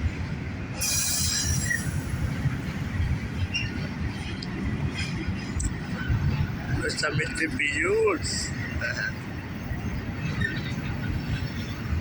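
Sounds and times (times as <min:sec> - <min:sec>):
freight train rumbling past: 0:00.0 - 0:12.0
faint wheel squeal: 0:00.8 - 0:02.1.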